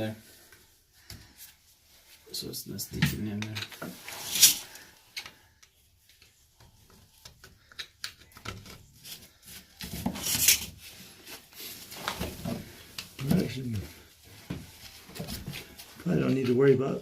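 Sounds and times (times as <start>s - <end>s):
sharp pipe scrape: 4.0s - 4.8s.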